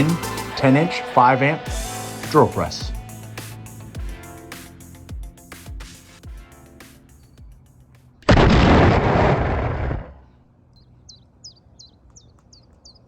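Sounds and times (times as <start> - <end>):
bird chirping: 7.1 - 8.2, 10.2 - 13.0
loud explosion-like burst: 8.3 - 10.1.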